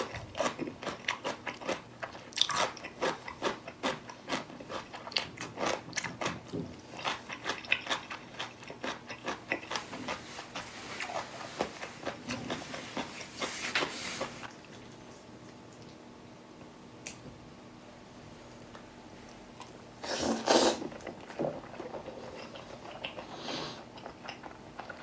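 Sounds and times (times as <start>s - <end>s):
chewing and crunching: 0.0s - 13.5s, 20.9s - 25.0s.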